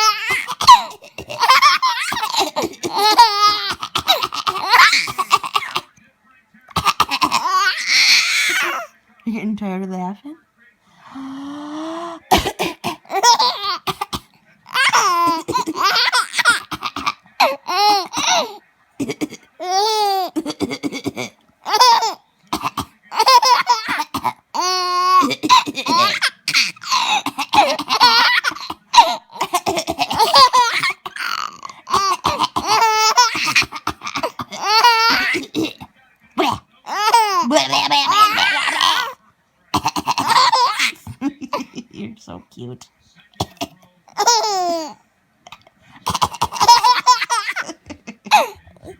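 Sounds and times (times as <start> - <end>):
baby giggling: 0.0 - 5.8, 12.3 - 14.1, 14.7 - 35.8, 36.4 - 39.2, 39.8 - 42.0, 43.5 - 48.9
baby coughing: 0.0 - 5.9, 6.7 - 8.9, 12.2 - 41.6, 43.4 - 48.9.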